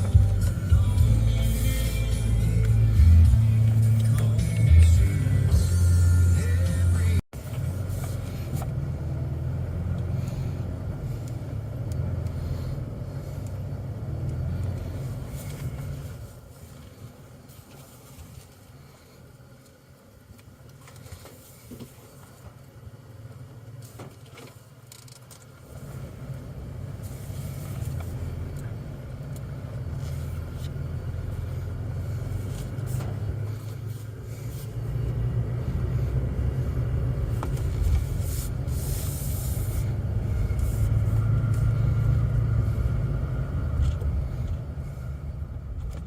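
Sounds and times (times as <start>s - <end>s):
motor vehicle engine rumble: 0.0s - 46.0s.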